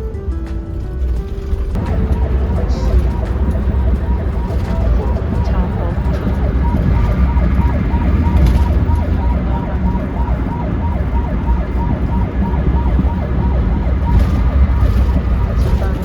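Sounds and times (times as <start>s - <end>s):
road and engine rumble: 0.0s - 16.0s
ambulance siren yelping: 1.0s - 16.0s.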